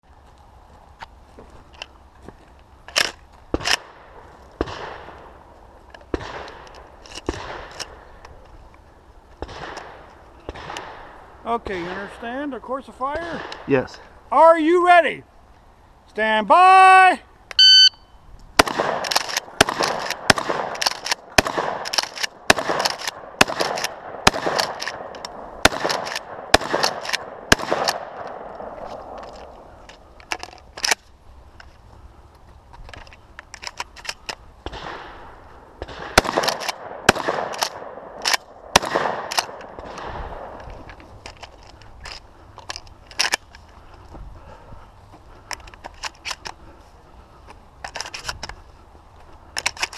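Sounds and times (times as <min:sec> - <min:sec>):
shotgun shots: 0:03.5 - 0:05.2, 0:06.1 - 0:06.6, 0:07.3 - 0:07.8, 0:09.4 - 0:12.2, 0:18.6 - 0:29.2, 0:34.6 - 0:40.6.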